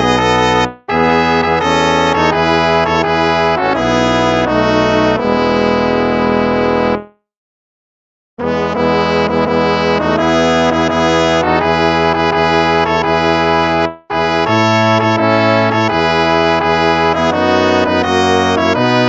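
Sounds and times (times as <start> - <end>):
instrumental hymn music: 0.0 - 7.2, 8.4 - 19.0.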